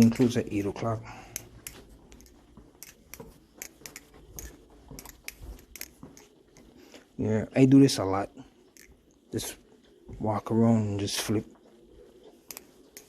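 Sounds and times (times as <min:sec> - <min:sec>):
butterfly knife handles clacking: 0:01.3 - 0:06.8, 0:08.7 - 0:09.2, 0:12.4 - 0:13.0.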